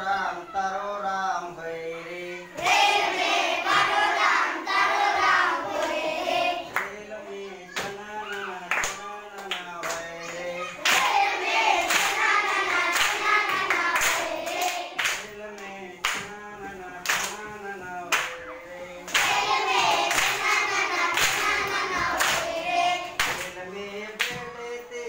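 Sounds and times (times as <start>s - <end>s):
children singing in unison: 0.0s - 15.2s, 17.4s - 25.0s
children clapping in time: 6.7s - 7.0s, 7.7s - 16.3s, 17.0s - 17.4s, 18.1s - 18.4s, 19.1s - 23.6s.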